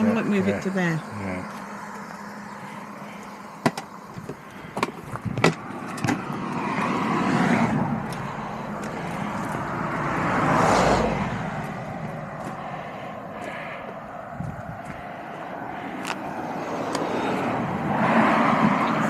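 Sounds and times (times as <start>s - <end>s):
vehicles passing close by: 0.0s - 19.0s
sharp clicks and knocks: 3.6s - 6.4s.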